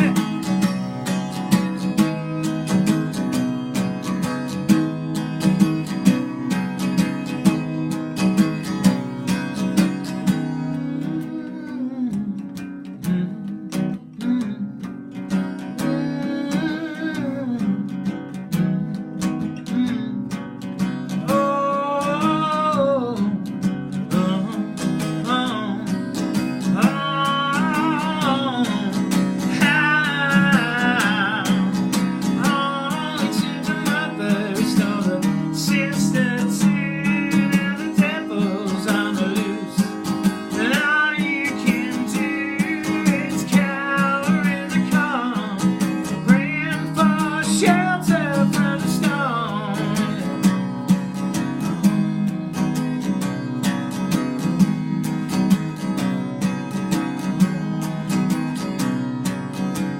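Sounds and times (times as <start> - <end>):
strummed acoustic guitar: 0.0 - 59.9.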